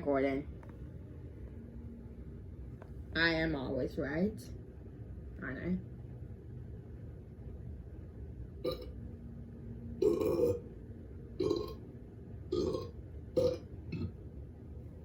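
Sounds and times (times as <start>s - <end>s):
person burping: 8.6s - 8.9s, 10.0s - 10.6s, 11.4s - 11.8s, 12.5s - 14.1s.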